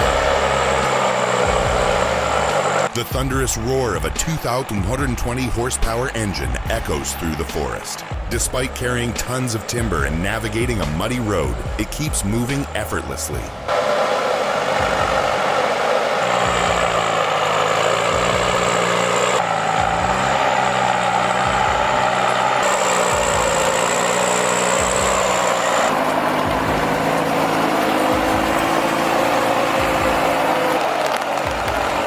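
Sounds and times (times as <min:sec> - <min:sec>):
heavy truck engine running: 0:00.0 - 0:32.0.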